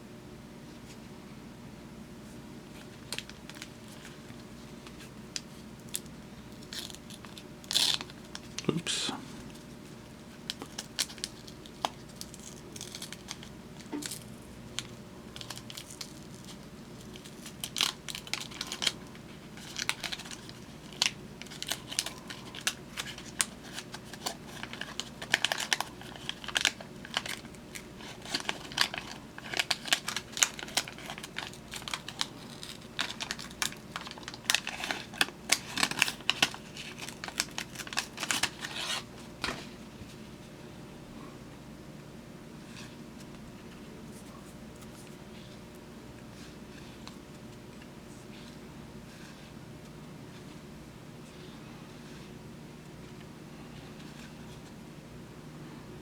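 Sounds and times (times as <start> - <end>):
wax paper wrappers crinkling: 2.7 - 40.2.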